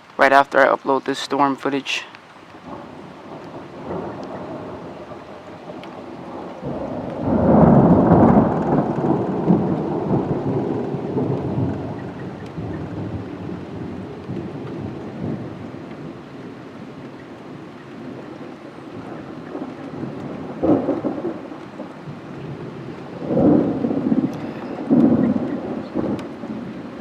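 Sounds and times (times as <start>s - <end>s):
light rain falling: 0.0s - 27.0s
distant thunder rumbling: 2.5s - 27.0s.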